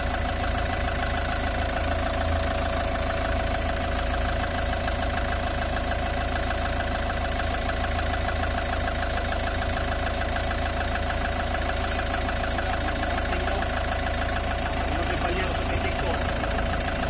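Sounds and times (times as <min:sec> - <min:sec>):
van engine idling: 0:00.0 - 0:17.0.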